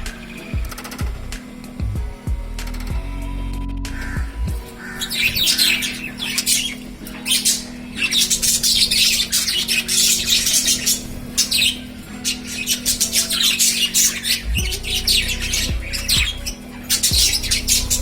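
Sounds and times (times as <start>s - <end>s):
lovebirds chattering and squawking: 4.0s - 18.0s.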